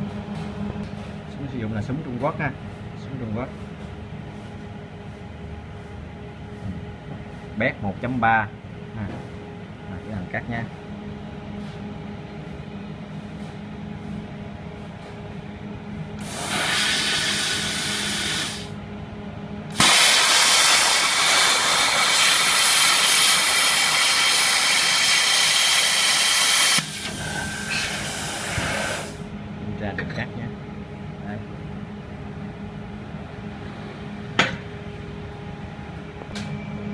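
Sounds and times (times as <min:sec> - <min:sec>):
plasma cutter hissing: 0:16.2 - 0:18.8, 0:19.7 - 0:29.3.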